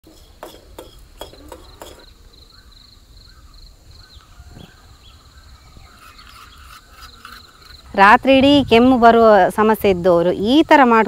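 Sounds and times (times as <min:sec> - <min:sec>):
insect chirping in trills: 0:00.2 - 0:08.4.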